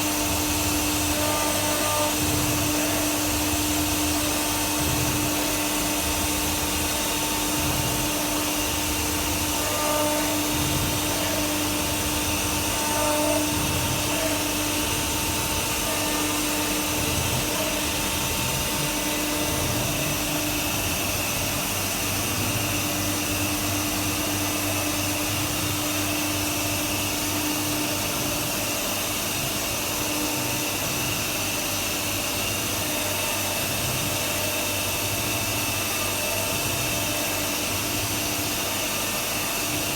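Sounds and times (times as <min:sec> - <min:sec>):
router spindle whining: 0:00.0 - 0:38.0.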